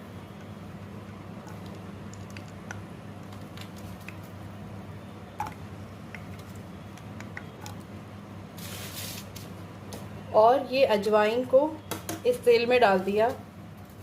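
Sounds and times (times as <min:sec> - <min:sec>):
steady low hum: 0:00.0 - 0:08.8.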